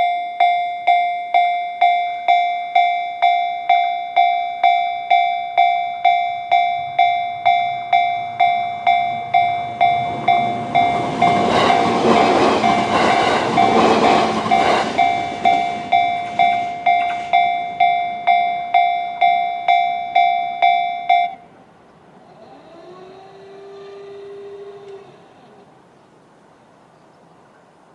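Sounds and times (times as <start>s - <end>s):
level crossing warning bell: 0.0s - 21.6s
train wheels rushing and clicking: 7.0s - 20.3s.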